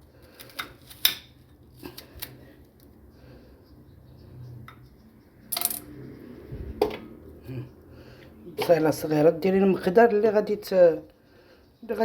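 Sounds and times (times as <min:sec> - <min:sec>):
kitchen items clattering: 0:08.5 - 0:09.2.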